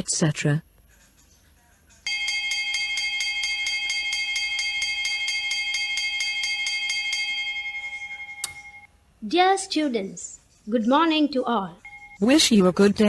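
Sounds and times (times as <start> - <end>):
electric bell ringing: 2.1 - 8.9, 11.8 - 13.0.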